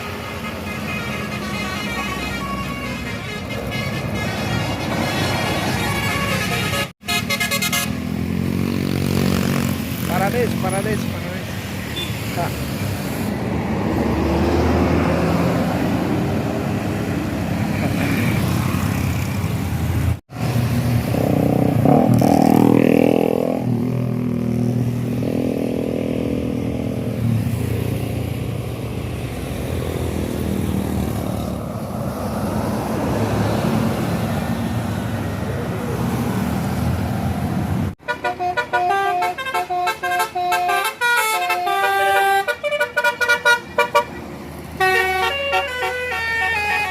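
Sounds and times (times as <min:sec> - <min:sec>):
multi-tone bus horn melody: 0:00.0 - 0:08.2, 0:38.0 - 0:46.9
vehicles passing: 0:00.0 - 0:46.9.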